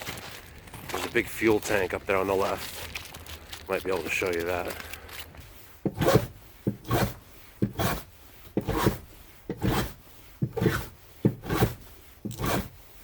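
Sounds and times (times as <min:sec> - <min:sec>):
footsteps crunching: 0:00.0 - 0:05.8.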